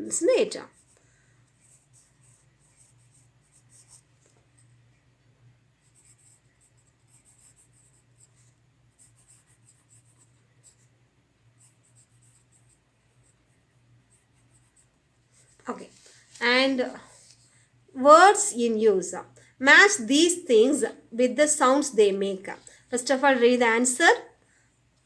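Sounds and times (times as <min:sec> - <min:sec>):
steady low hum: 0:00.0 - 0:25.0
pen scratching while writing: 0:00.6 - 0:01.0, 0:01.6 - 0:04.8, 0:05.8 - 0:10.9, 0:11.6 - 0:15.6.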